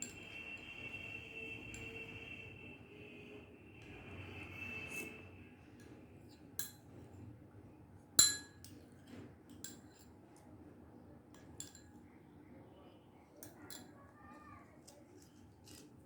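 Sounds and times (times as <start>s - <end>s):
spoon clinking against dish: 6.3s - 6.9s, 8.2s - 8.8s, 9.5s - 10.2s, 11.4s - 12.0s.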